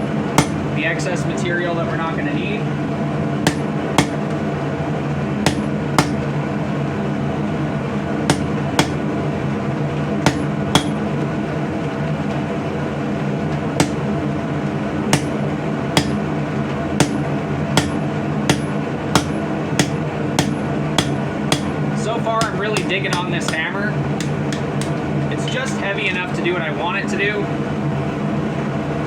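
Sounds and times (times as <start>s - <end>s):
hammer striking metal on anvil: 0.0s - 0.7s, 3.5s - 4.3s, 5.5s - 6.3s, 8.3s - 9.0s, 10.3s - 11.0s, 13.8s - 14.1s, 15.2s - 15.4s, 16.0s - 16.2s, 17.0s - 21.8s, 22.4s - 25.0s
steady low hum: 0.0s - 25.8s.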